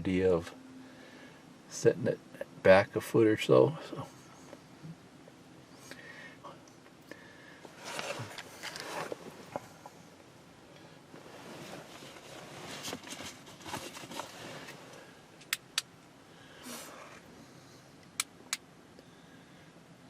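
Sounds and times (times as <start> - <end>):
shuffling handling noise: 7.6 - 10.0, 11.1 - 15.1.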